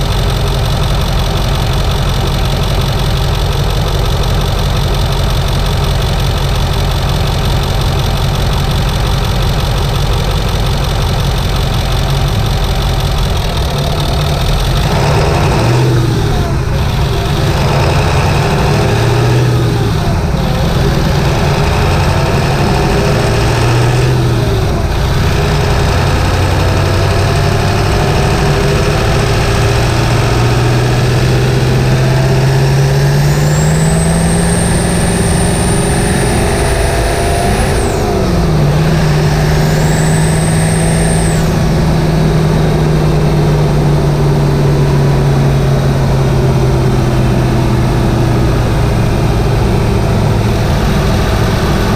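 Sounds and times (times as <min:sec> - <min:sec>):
diesel engine revving: 0:00.0 - 0:51.9
high turbo whistle: 0:33.3 - 0:42.0.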